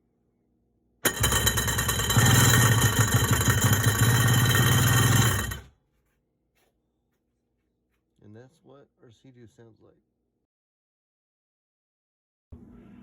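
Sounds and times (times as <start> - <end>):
engine idling with loud rattle: 1.1 - 5.6.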